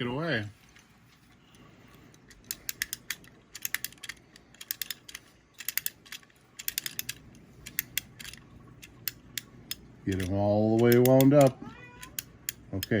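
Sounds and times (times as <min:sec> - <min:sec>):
wind-up key ratchet clicking: 0:02.4 - 0:08.4, 0:09.0 - 0:13.0.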